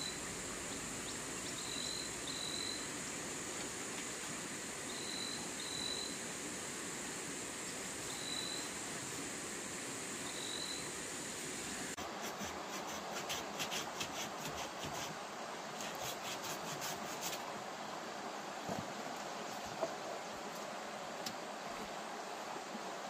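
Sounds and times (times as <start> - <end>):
quick rhythmic rasping scrapes: 12.0 - 15.2, 15.8 - 17.4.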